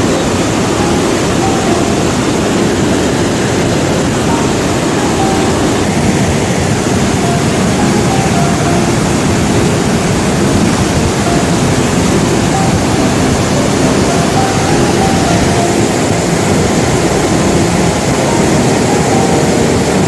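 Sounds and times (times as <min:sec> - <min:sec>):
floodwater rushing: 0:00.0 - 0:20.0.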